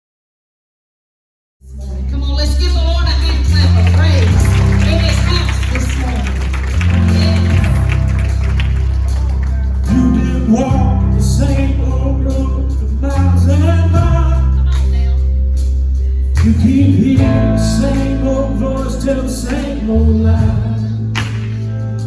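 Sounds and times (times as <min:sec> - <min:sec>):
gospel song with bass and guitar: 0:01.6 - 0:22.0
person singing: 0:09.0 - 0:15.3, 0:16.4 - 0:22.0.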